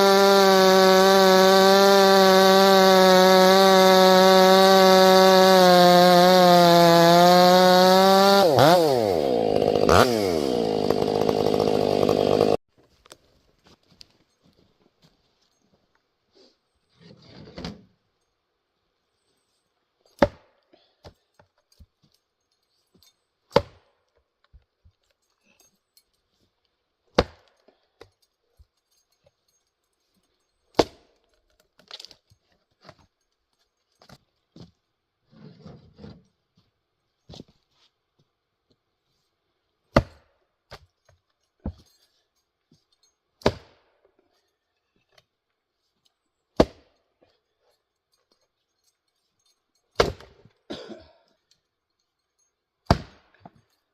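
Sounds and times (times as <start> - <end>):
axe splitting firewood: 0.0 - 12.6, 20.1 - 20.4, 23.5 - 23.8, 27.1 - 28.1, 30.7 - 33.1, 39.9 - 41.9, 43.4 - 44.1, 46.5 - 46.9, 49.9 - 51.0, 52.8 - 53.6.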